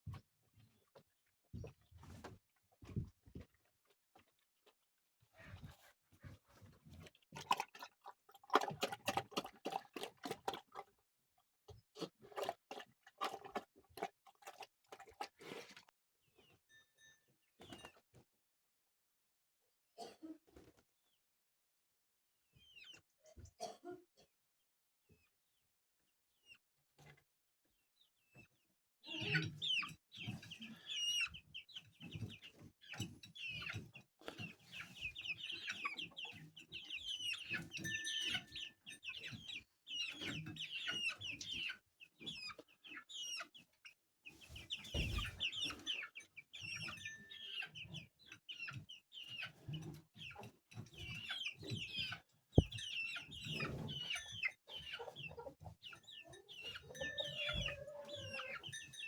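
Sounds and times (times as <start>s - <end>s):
chickens clucking: 29.0s - 43.6s, 44.3s - 59.0s.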